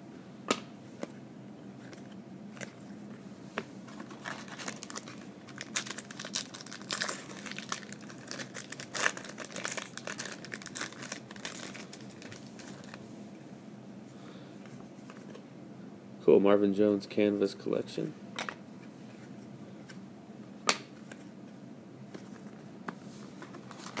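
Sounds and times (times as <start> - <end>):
wrapper crinkling and tearing: 4.0 - 13.0, 23.6 - 24.0.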